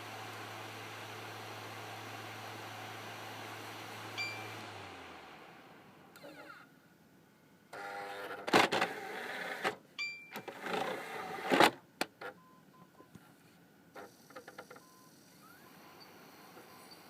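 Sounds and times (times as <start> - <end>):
short electronic beep: 4.2 - 4.6
disc drive motor whirring: 14.0 - 17.0.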